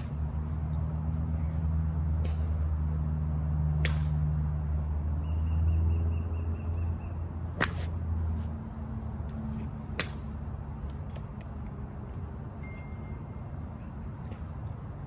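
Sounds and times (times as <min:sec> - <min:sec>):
steady low hum: 0:00.0 - 0:15.0
golf club striking ball: 0:03.8 - 0:04.4, 0:07.6 - 0:08.0.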